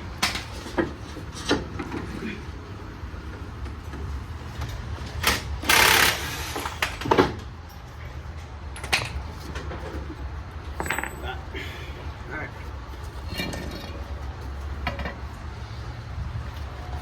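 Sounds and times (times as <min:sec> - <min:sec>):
metal clunks and knocks: 0:10.7 - 0:11.4, 0:14.7 - 0:15.3.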